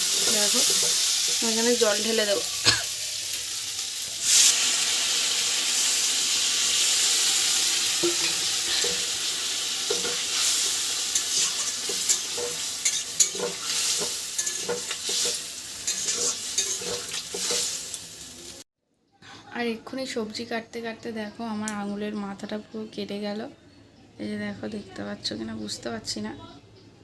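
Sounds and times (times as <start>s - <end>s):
spoon scraping a pan: 0.0s - 1.4s, 7.8s - 18.0s
water sizzling in a hot pan: 0.0s - 18.6s.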